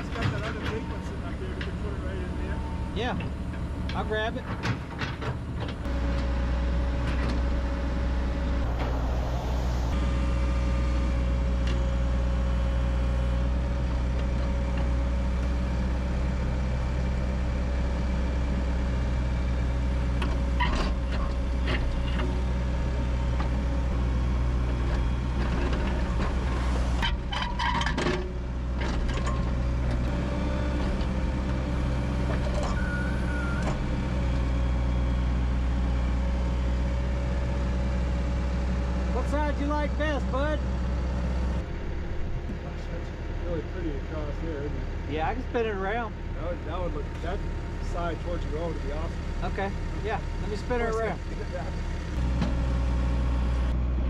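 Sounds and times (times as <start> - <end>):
excavator diesel engine under load: 11.6 - 39.6.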